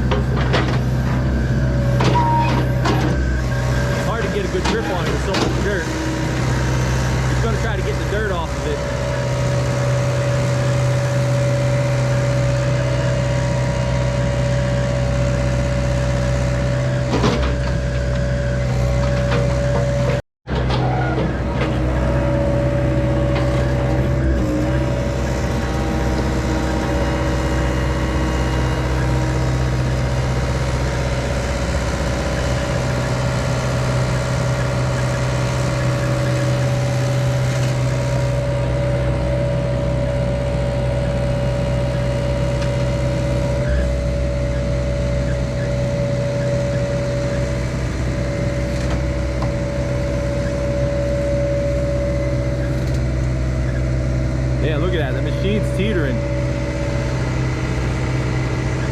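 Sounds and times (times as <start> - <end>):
excavator diesel engine running: 0.0 - 58.9
hydraulics working: 0.0 - 58.9.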